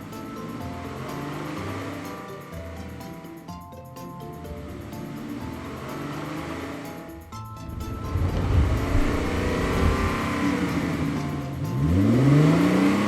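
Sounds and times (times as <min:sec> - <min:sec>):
background music: 0:00.0 - 0:13.0
vehicle engine revving: 0:07.7 - 0:13.0.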